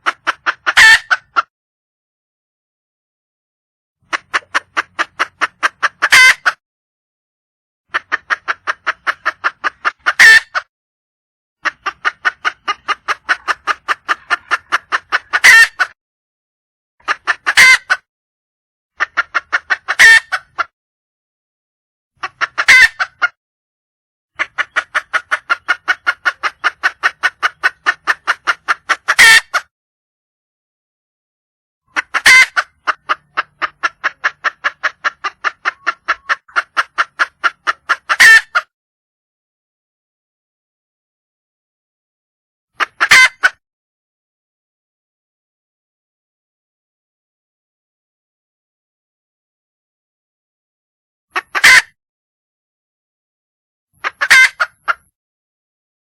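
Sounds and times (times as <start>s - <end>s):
hen clucking: 0.0s - 1.5s, 4.0s - 6.6s, 7.9s - 10.7s, 11.6s - 16.0s, 17.0s - 18.1s, 19.0s - 20.7s, 22.2s - 23.4s, 24.4s - 29.7s, 31.9s - 38.7s, 42.8s - 43.6s, 51.3s - 52.0s, 54.0s - 55.1s.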